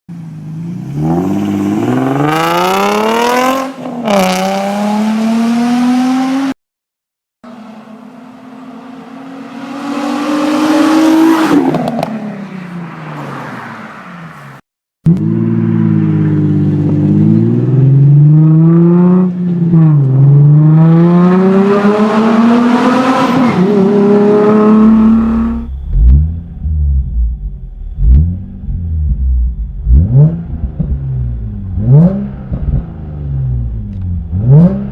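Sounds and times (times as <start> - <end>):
car exhaust accelerating hard: 23.6 - 34.9.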